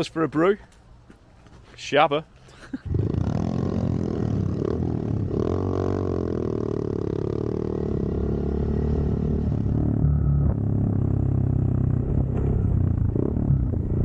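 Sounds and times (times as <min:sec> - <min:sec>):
motorcycle engines running: 0:02.9 - 0:14.0.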